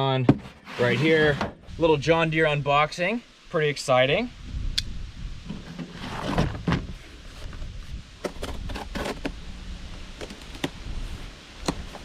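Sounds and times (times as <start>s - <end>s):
cardboard tearing and scraping: 8.3s - 9.3s.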